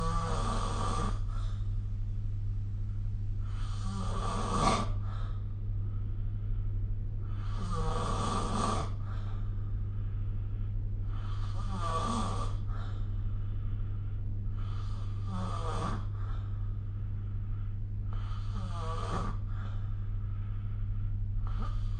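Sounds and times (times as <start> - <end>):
person snoring: 0.0 - 1.6, 3.4 - 5.4, 7.2 - 9.4, 11.0 - 13.0, 14.5 - 16.6, 18.1 - 19.9, 21.4 - 21.9
steady low hum: 0.0 - 21.9.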